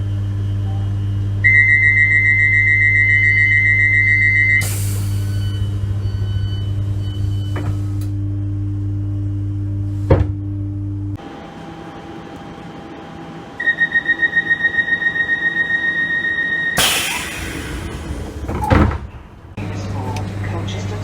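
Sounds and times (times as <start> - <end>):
steady low hum: 16.8 - 20.1.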